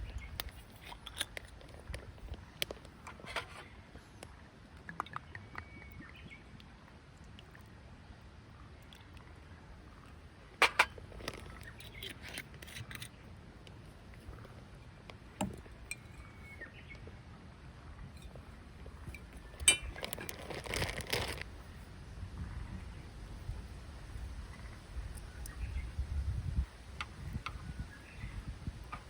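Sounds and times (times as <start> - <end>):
cookware clinking: 10.6 - 11.0
rustling: 19.3 - 21.8.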